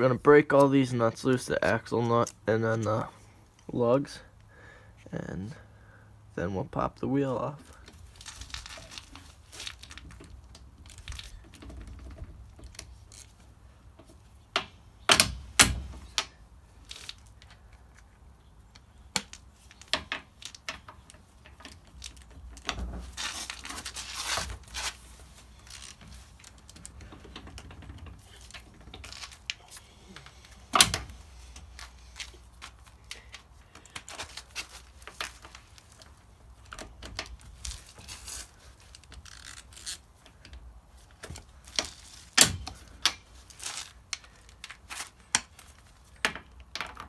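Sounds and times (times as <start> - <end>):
scraping rustle: 7.6 - 14.4, 19.3 - 46.2.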